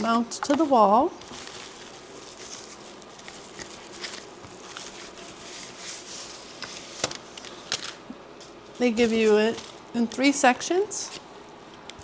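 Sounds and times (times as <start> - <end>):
packaging rustling: 0.4 - 10.0.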